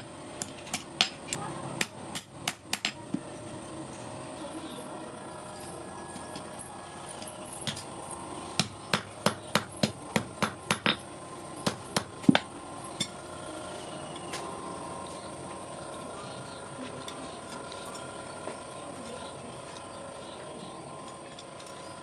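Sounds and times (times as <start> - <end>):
hammer striking iron on anvil: 8.6 - 11.0, 11.6 - 13.2.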